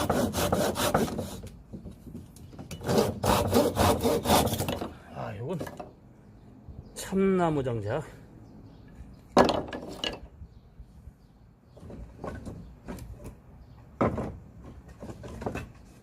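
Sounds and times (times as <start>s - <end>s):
wood scraping: 0.0s - 6.0s, 11.7s - 16.0s.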